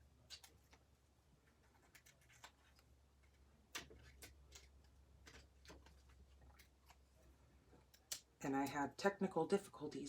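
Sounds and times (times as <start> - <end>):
paper card clicks and taps: 3.7 - 7.0.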